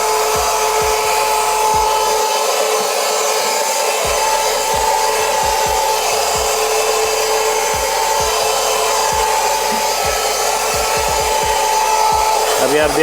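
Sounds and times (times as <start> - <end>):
handheld vacuum cleaner running: 0.0 - 13.0.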